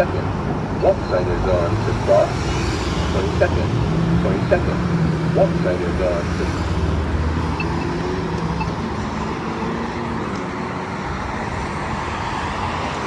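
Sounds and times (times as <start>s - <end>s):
faint engine hum: 0.0s - 9.4s
passing cars: 0.0s - 13.0s.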